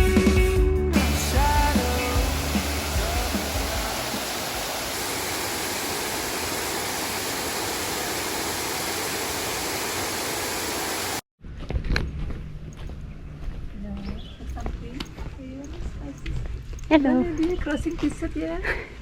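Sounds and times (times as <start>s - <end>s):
background music: 0.0s - 4.3s
waterfall rushing: 1.0s - 11.2s.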